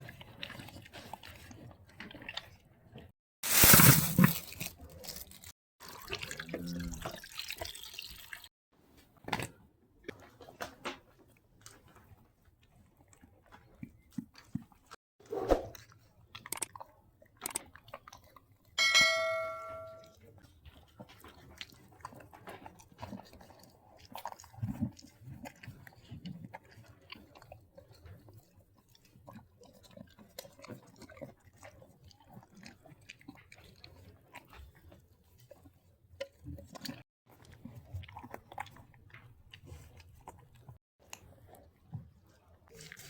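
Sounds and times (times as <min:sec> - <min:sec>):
calves chewing tomatoes: 0:00.0 - 0:03.1, 0:10.0 - 0:15.0, 0:16.4 - 0:18.8, 0:20.2 - 0:43.0.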